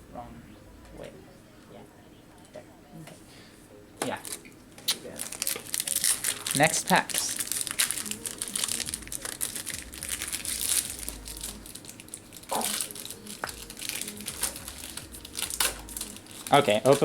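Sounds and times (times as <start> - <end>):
foil wrappers tearing and crinkling: 4.2 - 17.0.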